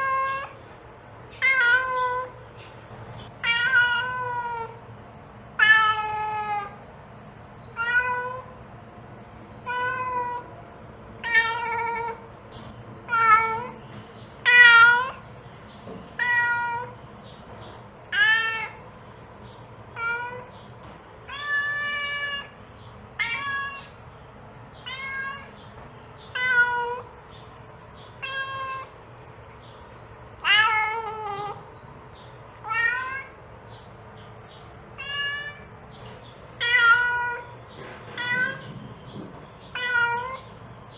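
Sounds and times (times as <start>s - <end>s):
cat meowing: 0.0s - 0.6s, 1.4s - 2.4s, 3.4s - 4.8s, 5.6s - 6.8s, 7.7s - 8.6s, 9.6s - 10.5s, 11.2s - 12.3s, 13.0s - 13.8s, 14.4s - 15.3s, 16.1s - 17.0s, 18.1s - 18.9s, 19.9s - 20.5s, 21.2s - 24.0s, 24.8s - 25.6s, 26.2s - 27.2s, 28.1s - 29.0s, 30.4s - 31.7s, 32.6s - 33.4s, 34.9s - 35.8s, 36.6s - 38.7s, 39.6s - 40.6s.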